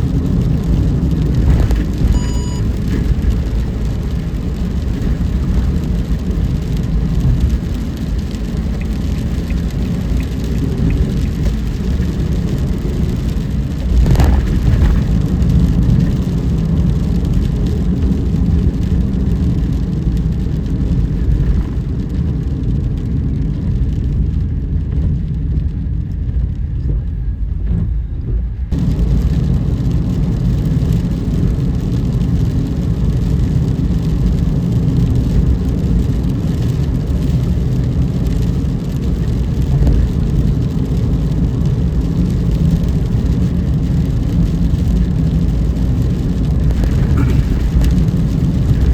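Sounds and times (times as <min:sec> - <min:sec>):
car road and engine rumble: 0:00.0 - 0:48.9.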